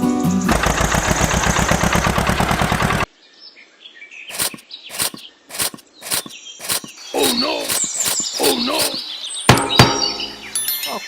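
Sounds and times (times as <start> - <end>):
birds chirping faintly: 3.1 - 11.0
rapid rasping rhythm: 4.3 - 9.0
sharp knocks: 9.5 - 10.5.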